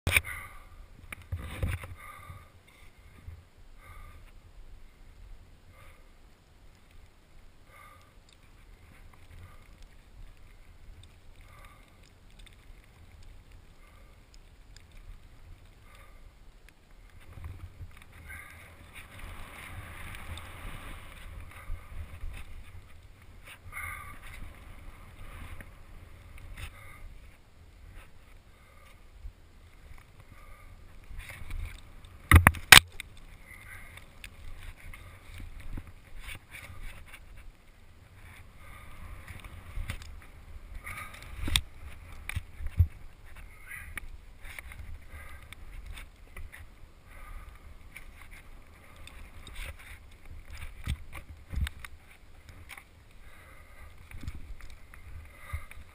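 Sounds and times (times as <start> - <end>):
person breathing heavily: 0.2 - 1.0, 1.8 - 5.0, 5.6 - 6.2, 7.6 - 8.2, 11.4 - 12.1, 15.7 - 16.4, 23.4 - 29.2, 29.8 - 31.5, 38.1 - 42.4, 43.4 - 50.0, 53.2 - 55.9.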